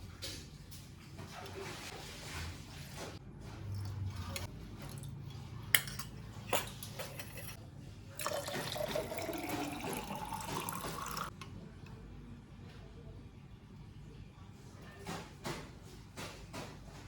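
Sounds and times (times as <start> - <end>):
tap water filling container: 8.2 - 11.3.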